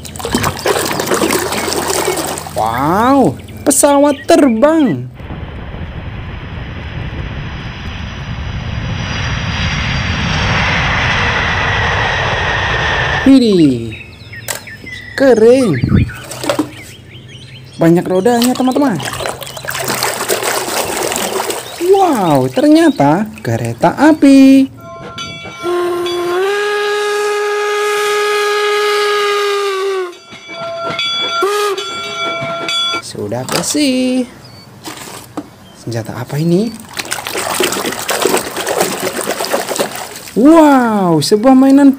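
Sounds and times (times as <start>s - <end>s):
airplane engine rush: 5.0s - 41.4s
faint high whine: 24.2s - 26.5s
train whistle blast: 24.8s - 33.0s.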